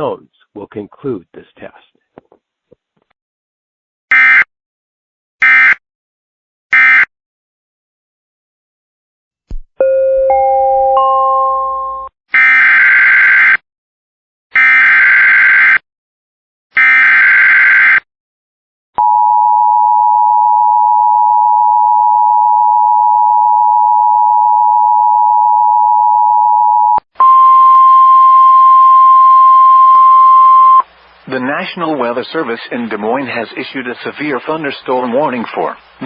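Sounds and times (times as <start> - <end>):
chime: 9.8 - 12.1.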